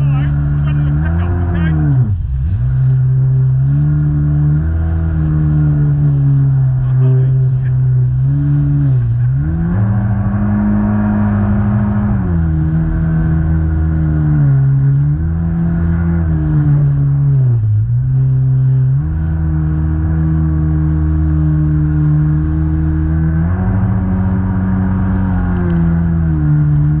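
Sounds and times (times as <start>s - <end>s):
jetski engine running: 0.0s - 27.0s.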